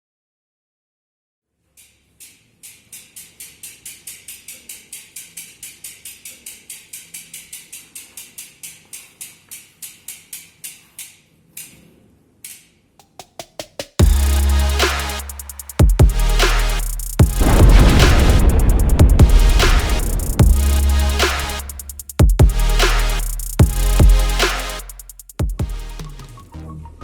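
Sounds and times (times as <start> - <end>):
bicycle hub ratchet clicking: 1.8 - 11.7, 21.7 - 22.6.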